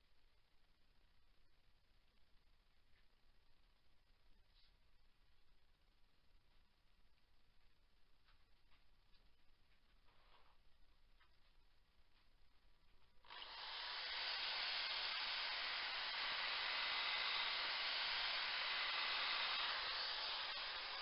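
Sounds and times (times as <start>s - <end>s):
sanding wood hiss: 13.3s - 21.0s.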